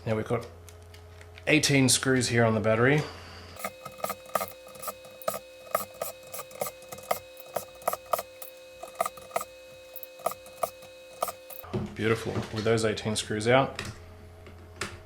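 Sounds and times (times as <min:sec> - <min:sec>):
screwdriver clicking on screws: 0:03.6 - 0:11.6
steady low hum: 0:03.6 - 0:11.6.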